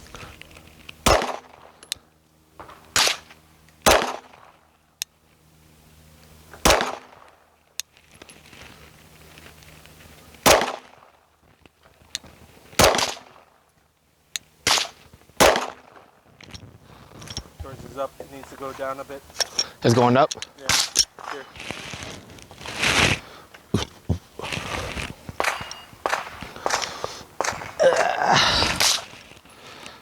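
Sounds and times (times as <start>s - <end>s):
steady low hum: 0.0s - 30.0s
faint distant gunshot cracks: 3.8s - 4.4s, 14.7s - 15.9s, 25.4s - 27.8s.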